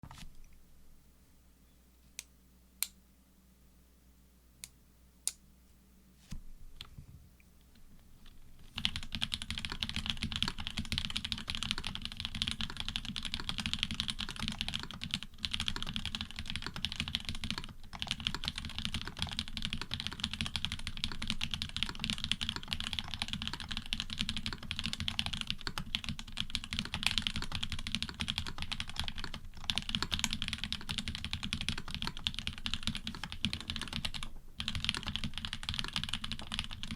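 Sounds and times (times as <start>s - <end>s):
mechanical keyboard typing: 8.8s - 36.9s.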